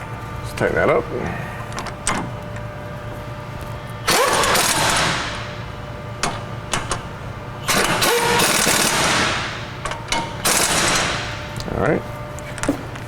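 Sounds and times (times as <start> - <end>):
impact wrench whining: 4.0 - 5.6, 6.2 - 11.5.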